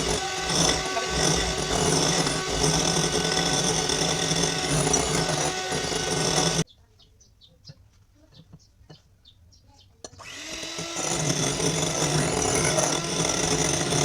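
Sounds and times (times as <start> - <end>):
electric mixer motor whine: 0.0 - 6.6, 10.2 - 14.0.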